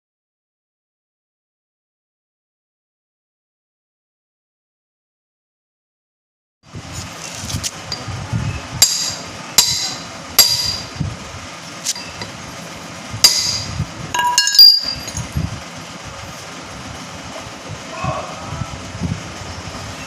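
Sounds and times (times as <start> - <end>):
low background rumble: 6.7 - 20.0
metal parts clinking: 13.3 - 15.3.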